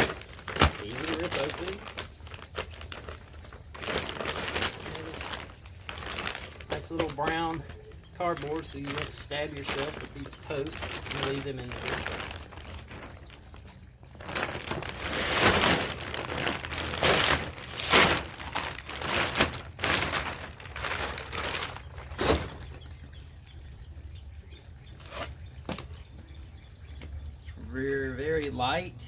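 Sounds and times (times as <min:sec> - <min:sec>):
cardboard scraping and rustling: 0:14.2 - 0:22.7.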